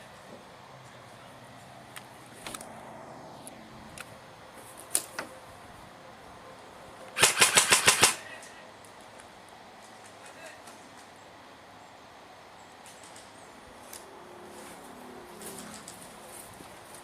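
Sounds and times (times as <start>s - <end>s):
airsoft gun firing: 7.2s - 8.4s.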